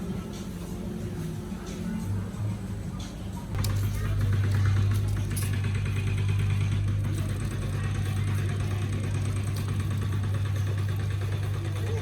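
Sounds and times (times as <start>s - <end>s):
engine running with fast pulsing: 3.5s - 12.0s.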